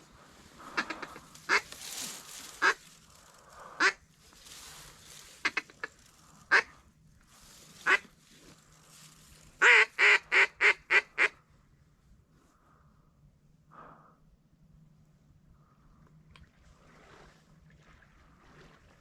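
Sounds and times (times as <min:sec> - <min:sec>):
duck quacking: 0:00.6 - 0:01.8, 0:02.6 - 0:02.8, 0:03.8 - 0:04.0, 0:05.4 - 0:06.7, 0:07.8 - 0:08.0, 0:09.6 - 0:11.4.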